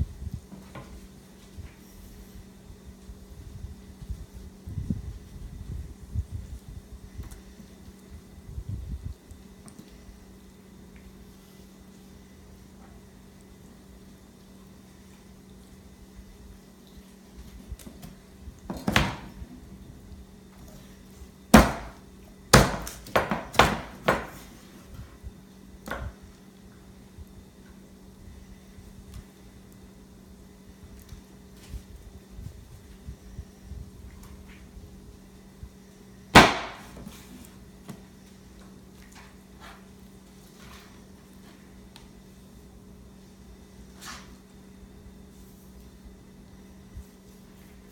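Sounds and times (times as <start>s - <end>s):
knife chopping on wooden board: 21.6s - 24.4s, 36.4s - 37.1s.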